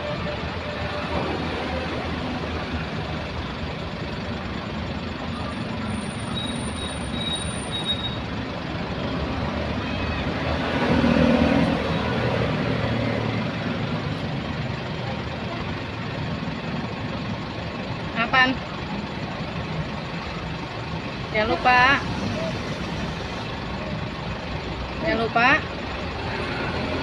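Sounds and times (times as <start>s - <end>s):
traffic noise: 0.0s - 27.0s
vehicle passing: 8.9s - 14.5s.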